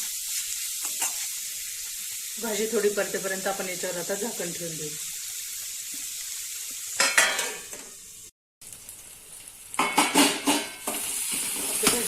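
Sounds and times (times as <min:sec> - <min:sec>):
leaves sizzling in oil: 0:00.0 - 0:12.0
metal spatula scraping a pan: 0:00.3 - 0:01.4, 0:09.8 - 0:12.0.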